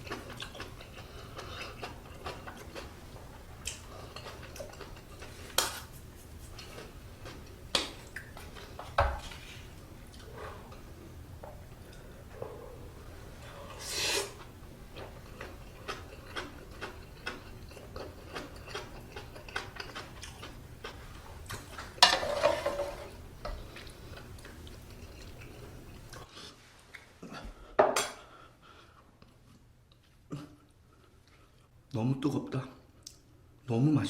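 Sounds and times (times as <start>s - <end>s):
utensils clinking on a pot: 22.0s - 23.2s
spoon scraping a bowl: 22.0s - 23.6s.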